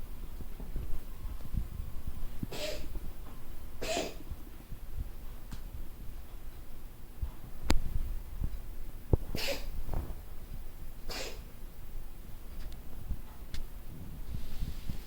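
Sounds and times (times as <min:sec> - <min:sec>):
cat coughing: 0:02.5 - 0:02.9, 0:03.8 - 0:04.3, 0:09.3 - 0:09.8, 0:11.0 - 0:11.5.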